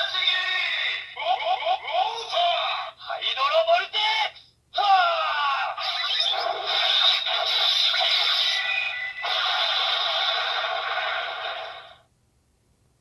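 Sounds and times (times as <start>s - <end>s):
toy sword electronic sound effects: 5.8s - 11.3s.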